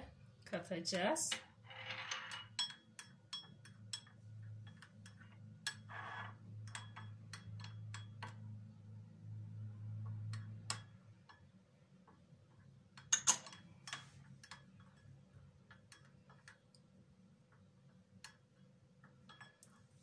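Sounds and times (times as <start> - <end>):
spoon clinking against dish: 2.3 - 5.9.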